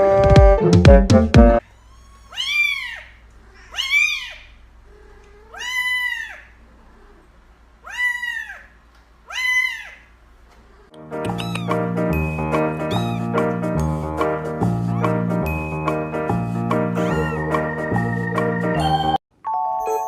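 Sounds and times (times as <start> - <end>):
music: 0.0 - 1.6, 11.0 - 20.0
cat meowing: 1.6 - 7.2, 7.8 - 10.1, 10.7 - 11.9, 12.8 - 13.5, 14.9 - 15.2, 17.0 - 17.6.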